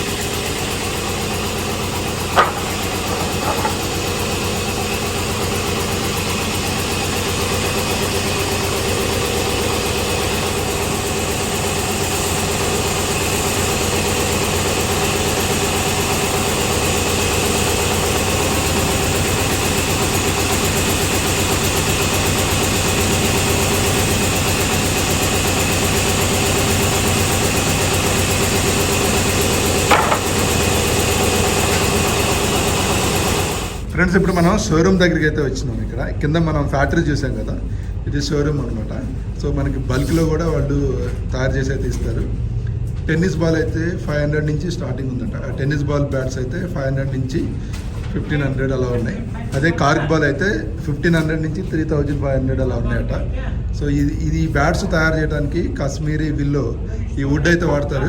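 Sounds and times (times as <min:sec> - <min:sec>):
woodworking machine motor humming: 0:00.0 - 0:35.0
sharp knock: 0:29.9 - 0:30.5.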